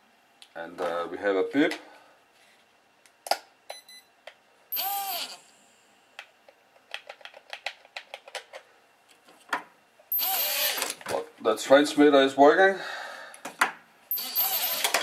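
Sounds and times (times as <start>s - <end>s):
electronic beep: 4.7s - 5.3s, 10.1s - 10.8s, 14.1s - 14.9s.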